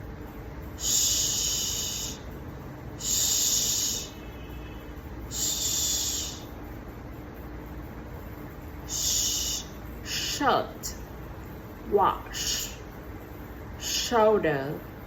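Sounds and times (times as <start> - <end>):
person saying sh: 0.8 - 2.2, 3.0 - 4.2, 5.3 - 6.4, 8.9 - 10.9, 11.9 - 12.8, 13.8 - 14.6.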